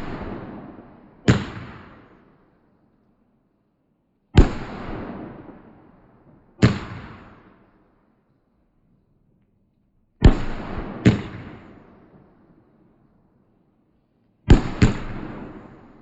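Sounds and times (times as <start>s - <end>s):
fireworks exploding with loud bangs: 0.0s - 2.4s, 4.4s - 7.7s, 10.2s - 12.4s, 14.5s - 16.0s.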